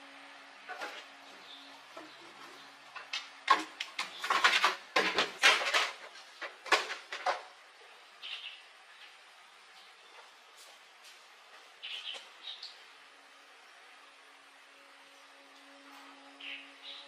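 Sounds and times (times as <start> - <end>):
hard objects knocking and clattering: 3.0 - 7.5.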